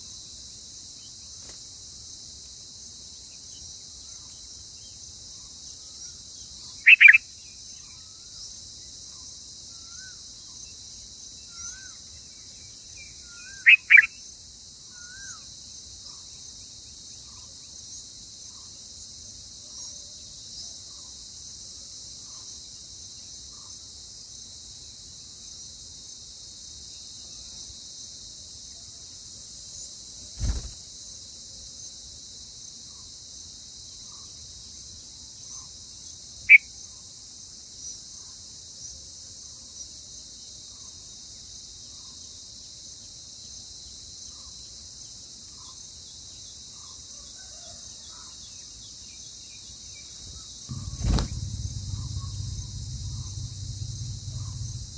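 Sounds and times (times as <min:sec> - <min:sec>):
high-pitched insect chorus: 0:30.4 - 0:30.8, 0:50.0 - 0:54.9
dull thump: 0:50.2 - 0:54.9.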